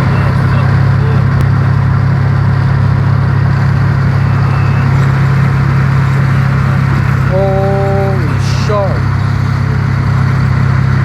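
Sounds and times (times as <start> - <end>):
engine idling: 0.0 - 11.0.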